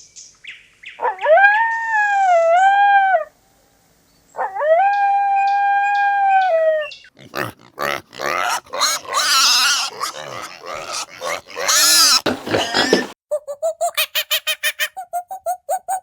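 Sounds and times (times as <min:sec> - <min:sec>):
short rough noises: 0:07.2 - 0:13.2.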